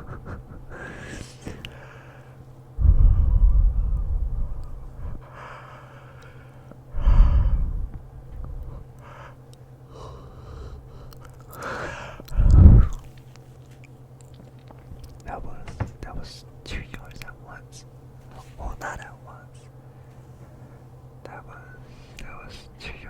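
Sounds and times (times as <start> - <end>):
soft breathing: 0.7 - 13.2, 19.6 - 22.6.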